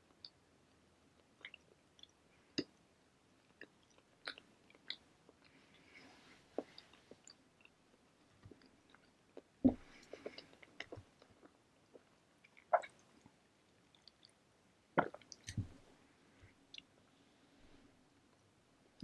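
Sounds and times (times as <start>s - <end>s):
chewing bread: 3.4s - 5.8s, 6.6s - 15.5s
mouth clicks and smacks: 3.5s - 5.6s, 8.5s - 13.1s, 15.0s - 15.7s.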